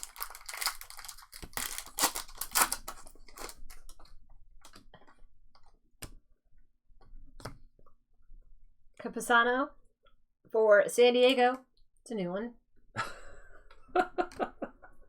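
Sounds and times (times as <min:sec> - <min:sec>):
foil packs rustling: 0:00.0 - 0:04.1.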